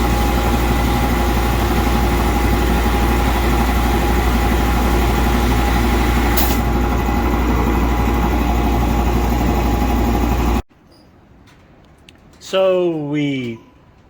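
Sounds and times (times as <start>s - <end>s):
air compressor running: 0.0s - 10.6s
short air hiss: 6.3s - 6.7s.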